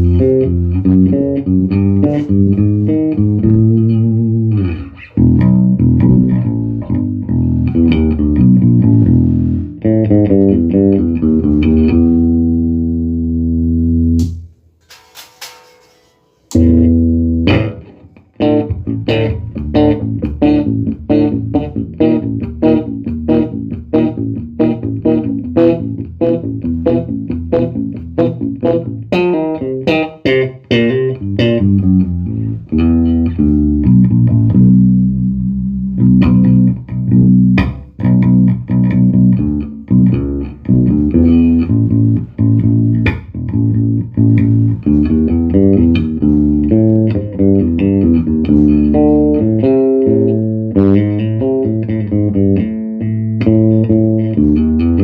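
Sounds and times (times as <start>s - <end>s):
electric bass guitar notes: 0.0s - 15.2s, 16.4s - 55.0s.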